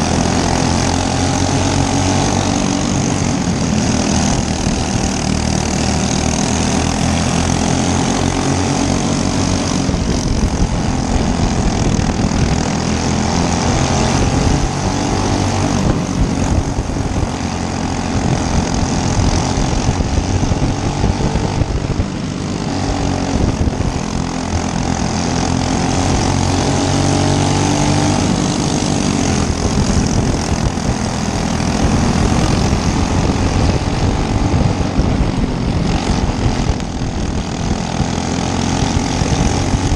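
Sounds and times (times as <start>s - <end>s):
go-kart engine running hard: 0.0s - 39.9s.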